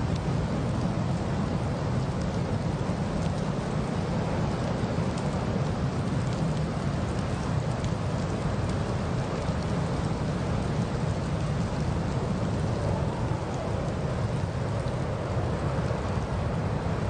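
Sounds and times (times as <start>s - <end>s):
road and wind noise: 0.0s - 17.0s.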